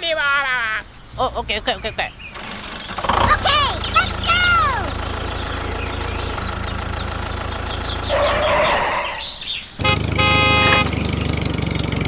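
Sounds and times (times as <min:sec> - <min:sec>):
birds chirping: 0:03.8 - 0:05.0.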